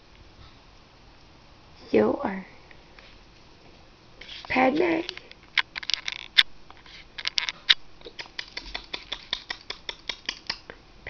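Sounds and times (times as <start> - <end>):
rapid sharp clicks: 7.2 - 10.8.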